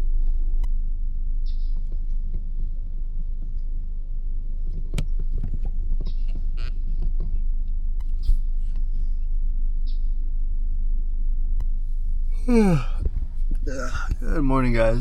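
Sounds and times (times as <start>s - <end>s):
steady low rumble: 0.0s - 15.0s
person's voice sliding down: 13.7s - 15.0s.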